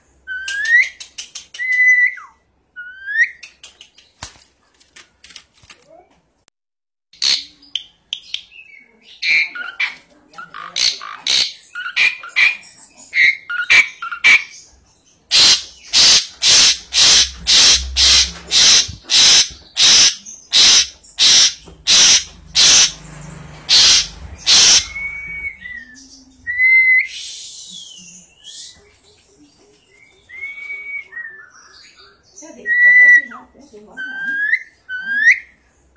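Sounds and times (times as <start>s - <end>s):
starling harsh calls: 9.0s - 14.7s, 15.3s - 27.5s
starling chirps and squawks: 9.0s - 26.9s.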